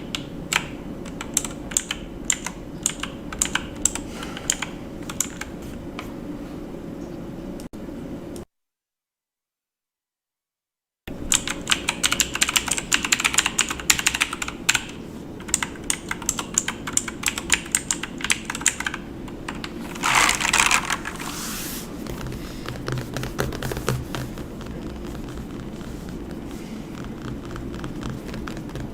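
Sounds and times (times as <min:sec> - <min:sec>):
keyboard typing clicks: 0:00.0 - 0:05.5, 0:11.3 - 0:21.2, 0:22.7 - 0:28.9.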